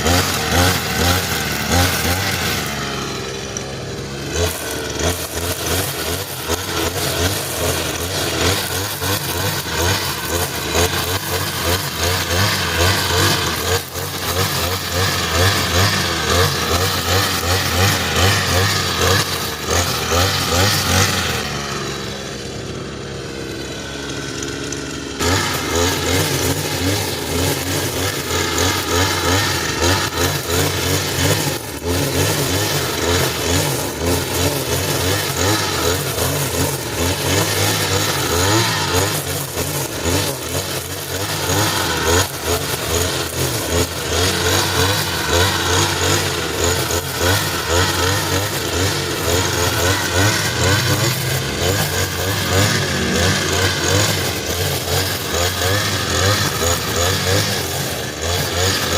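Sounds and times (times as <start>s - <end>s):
brush cutter engine cutting grass: 0.0s - 58.9s.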